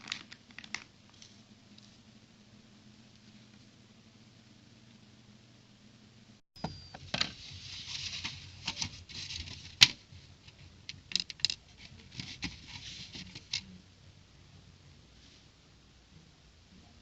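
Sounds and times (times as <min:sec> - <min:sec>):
plastic bricks clicking and rustling: 0:10.9 - 0:13.7.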